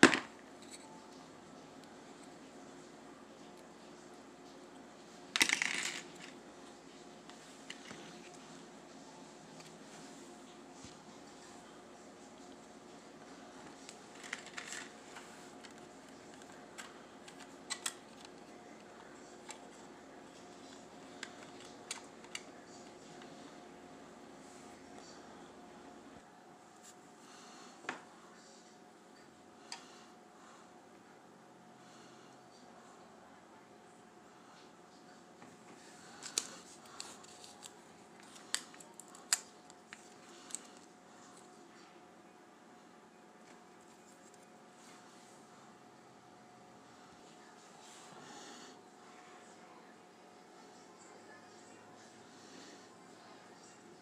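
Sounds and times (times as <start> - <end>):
faint steady hum: 0.0 - 54.0
hands handling plastic parts: 13.8 - 18.4, 36.2 - 40.9.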